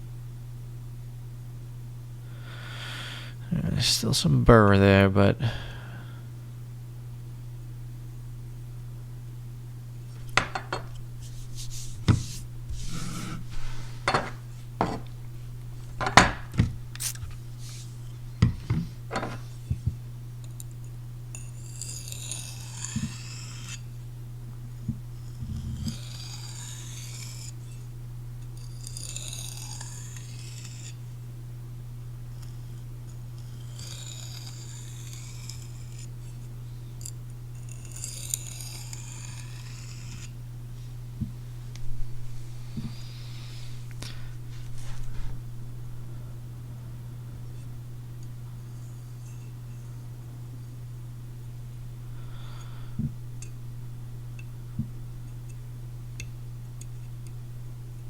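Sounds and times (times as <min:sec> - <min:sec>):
steady low hum: 0:00.0 - 0:58.0
blade rasping across sharpening stone: 0:10.2 - 0:15.2, 0:18.0 - 0:19.6, 0:21.3 - 0:23.9, 0:25.8 - 0:27.7, 0:28.6 - 0:31.0, 0:33.4 - 0:40.4, 0:48.7 - 0:50.0.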